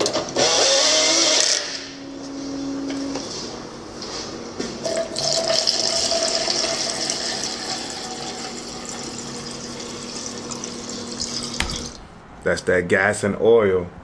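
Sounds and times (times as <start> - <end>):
liquid pouring into tank: 4.8 - 12.1.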